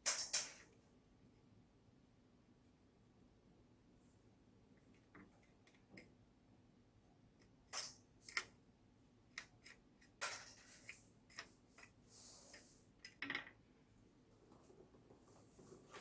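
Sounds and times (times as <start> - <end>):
soft rustle: 11.8 - 12.9, 14.2 - 16.0.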